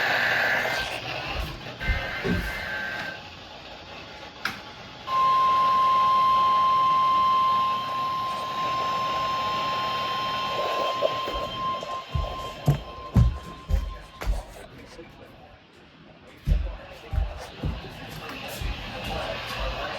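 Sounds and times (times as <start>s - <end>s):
steady alarm tone: 5.1s - 14.7s.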